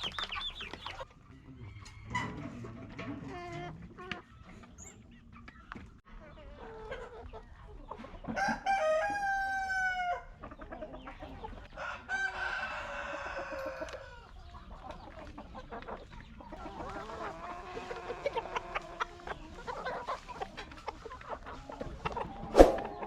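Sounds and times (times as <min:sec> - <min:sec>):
hens clucking: 0:00.0 - 0:23.0
rooster crowing: 0:08.4 - 0:10.3, 0:11.8 - 0:14.1.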